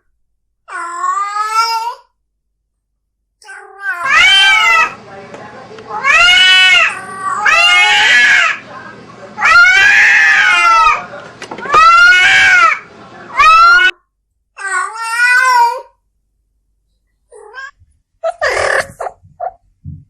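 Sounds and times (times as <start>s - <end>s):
cat yowling: 3.4s - 5.0s, 6.0s - 8.6s, 9.4s - 11.0s, 11.7s - 14.0s, 14.6s - 15.9s, 17.3s - 19.2s.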